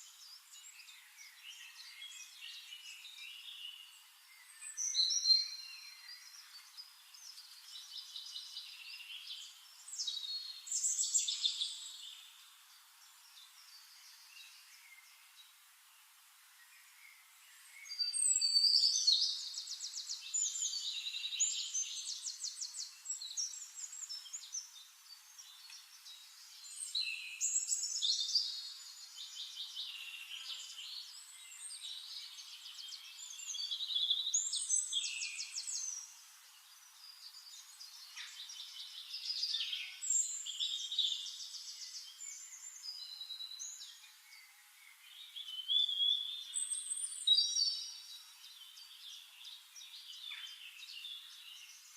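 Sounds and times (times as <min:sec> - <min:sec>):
songbirds singing: 0:00.0 - 0:51.9.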